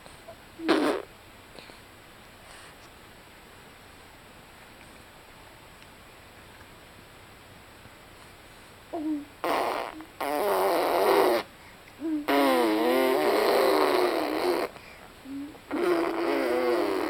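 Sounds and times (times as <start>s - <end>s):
baby blowing raspberries: 0.6s - 1.1s, 9.0s - 17.0s.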